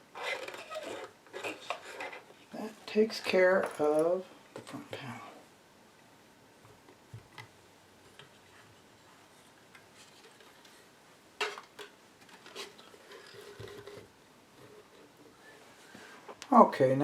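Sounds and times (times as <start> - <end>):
faint rubbing or scraping: 0.1 - 3.7, 12.4 - 16.4.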